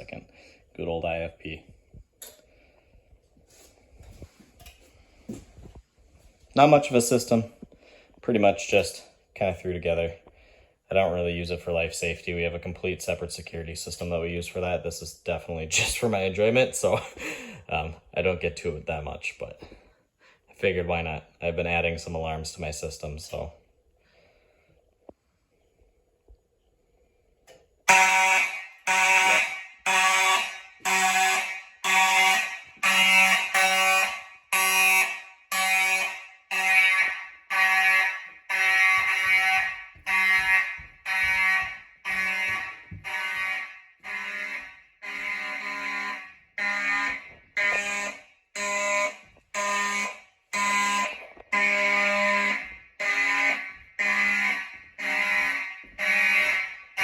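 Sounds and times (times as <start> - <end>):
fire alarm horn blasts: 27.8 - 57.0.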